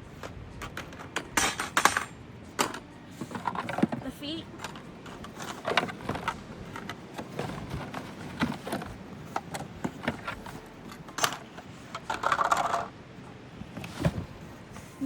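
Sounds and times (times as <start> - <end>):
hard plastic parts knocking: 0.1 - 13.0
cardboard packing rustling: 3.0 - 12.9, 13.6 - 15.0.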